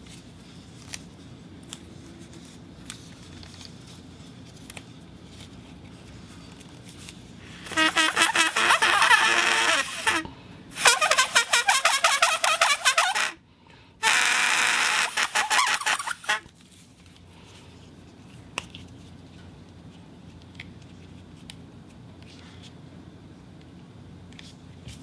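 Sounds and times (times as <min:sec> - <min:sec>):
rubber squeeze whistle squeaking: 0:07.6 - 0:13.4, 0:14.0 - 0:16.4.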